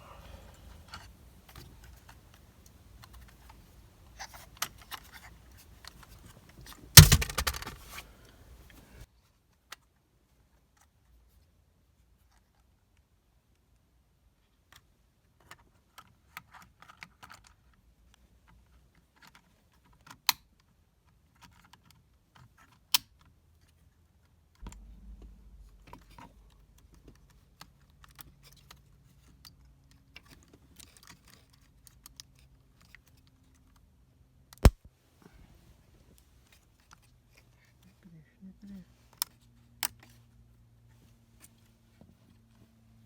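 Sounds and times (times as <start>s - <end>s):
sharp plastic snaps: 7.0s - 8.0s, 34.5s - 34.9s
low steady hum: 24.6s - 27.7s.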